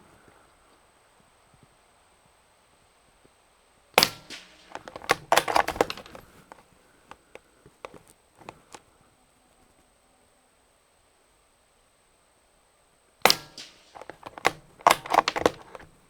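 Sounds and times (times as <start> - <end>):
rifle shot crack: 4.0 - 6.6, 13.2 - 16.0
metallic clicks and knocks: 4.0 - 8.7, 13.3 - 16.0.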